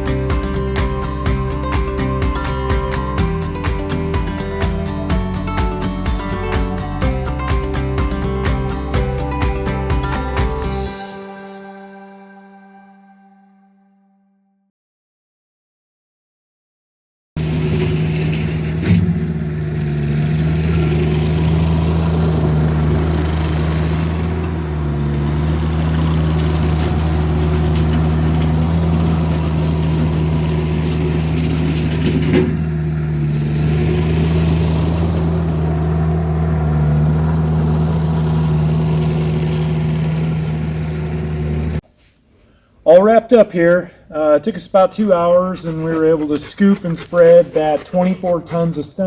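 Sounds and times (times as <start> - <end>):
skid steer engine running: 0.0 - 11.0, 17.4 - 41.8.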